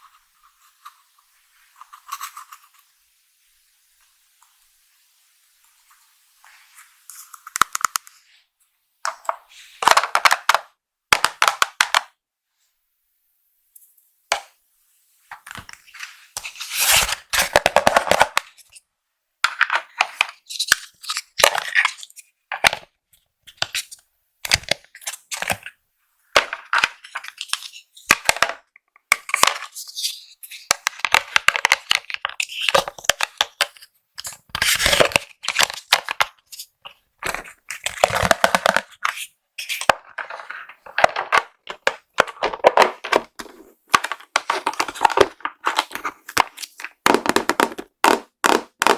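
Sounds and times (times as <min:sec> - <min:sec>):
packaging crinkling and tearing: 0:16.4 - 0:18.7, 0:29.3 - 0:47.0.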